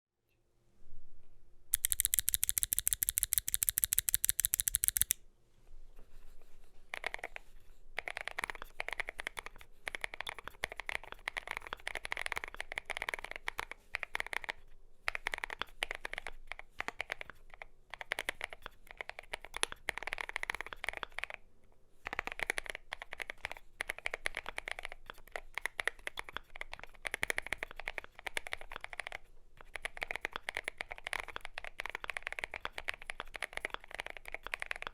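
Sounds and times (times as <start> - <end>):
mechanical keyboard typing: 1.8 - 5.2.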